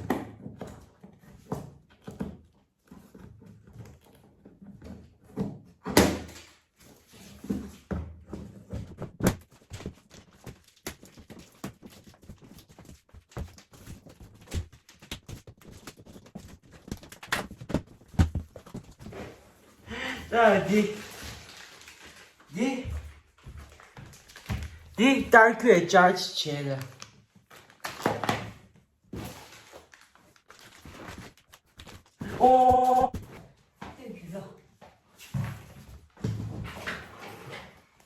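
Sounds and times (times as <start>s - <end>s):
objects knocking and thudding: 0.0s - 25.5s, 30.6s - 34.0s, 35.2s - 37.9s.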